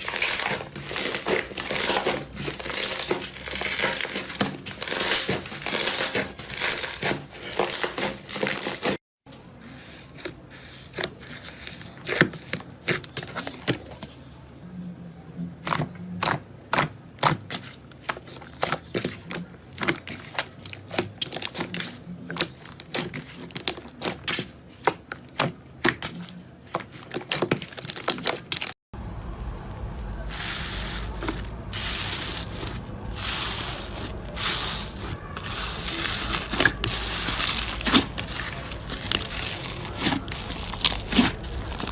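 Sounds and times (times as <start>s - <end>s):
low rumble of handling: 29.0s - 41.9s.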